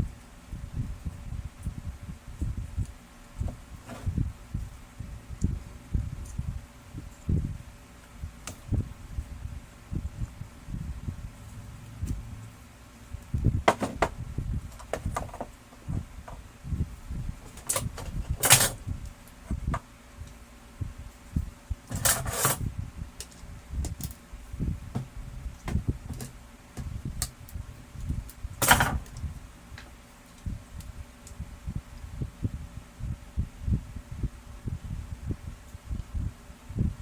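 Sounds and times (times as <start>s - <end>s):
plastic parts clicking and knocking: 13.6s - 16.4s, 28.6s - 29.2s.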